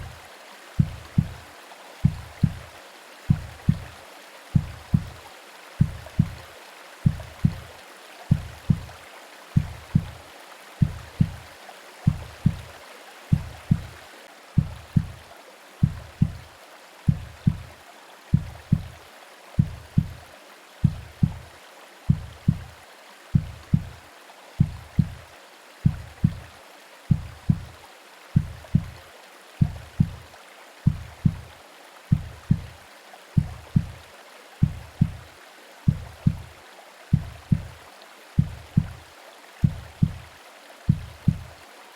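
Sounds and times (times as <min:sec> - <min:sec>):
heartbeat thumps: 0:00.0 - 0:00.2, 0:00.8 - 0:02.7, 0:03.3 - 0:07.7, 0:08.3 - 0:09.0, 0:09.6 - 0:10.2, 0:10.8 - 0:14.0, 0:14.6 - 0:16.5, 0:17.1 - 0:19.0, 0:19.6 - 0:21.5, 0:22.1 - 0:24.0, 0:24.6 - 0:26.5, 0:27.1 - 0:27.8, 0:28.4 - 0:29.0, 0:29.6 - 0:30.2, 0:30.8 - 0:32.8, 0:33.4 - 0:34.0, 0:34.6 - 0:35.3, 0:35.9 - 0:36.5, 0:37.1 - 0:37.8, 0:38.4 - 0:39.0, 0:39.6 - 0:40.3, 0:40.9 - 0:41.6
rain: 0:00.0 - 0:41.9
white noise hiss: 0:00.0 - 0:41.9.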